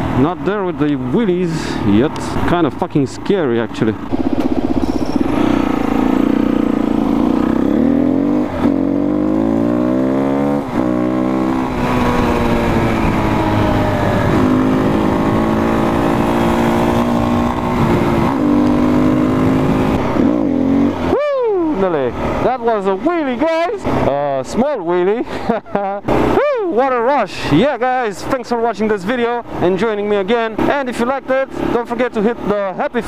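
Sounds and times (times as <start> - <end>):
motorcycle engine revving: 3.5 - 21.1.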